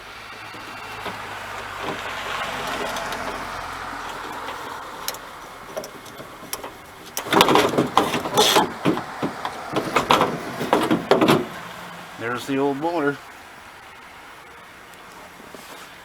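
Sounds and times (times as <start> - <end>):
metal parts clattering: 0.5 - 11.7.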